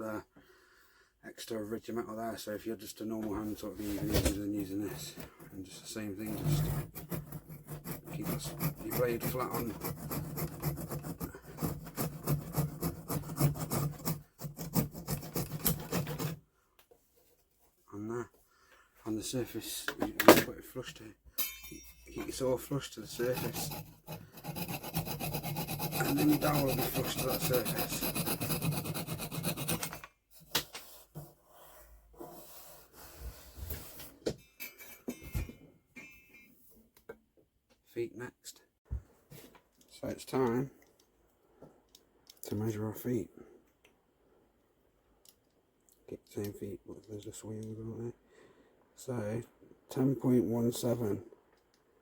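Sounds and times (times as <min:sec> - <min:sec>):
hand saw cutting wood: 0:06.0 - 0:16.4, 0:22.4 - 0:30.0.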